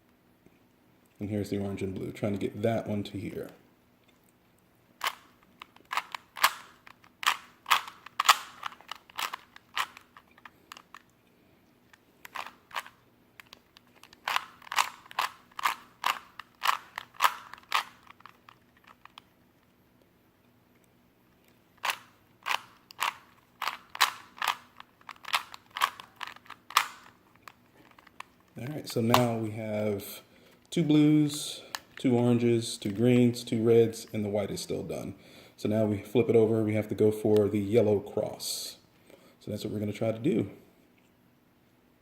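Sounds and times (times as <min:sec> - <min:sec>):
puzzle cube clicking as turned: 0:05.0 - 0:11.1, 0:11.9 - 0:19.3, 0:21.5 - 0:29.4.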